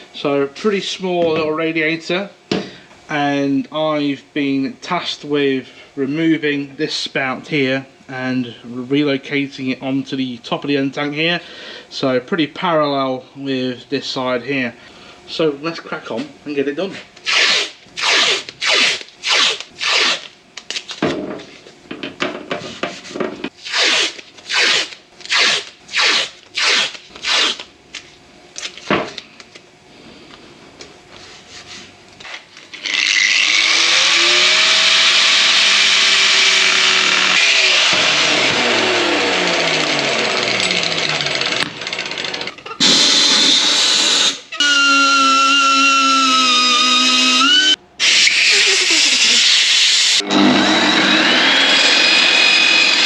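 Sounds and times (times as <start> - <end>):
power tool whine: 32.7 - 53.0.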